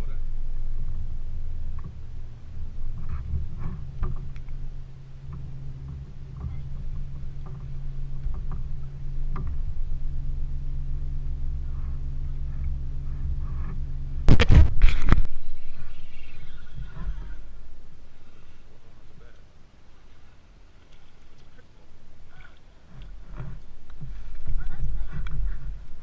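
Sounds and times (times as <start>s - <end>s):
low rumble: 0.0s - 26.0s
electric motor humming: 0.4s - 18.9s.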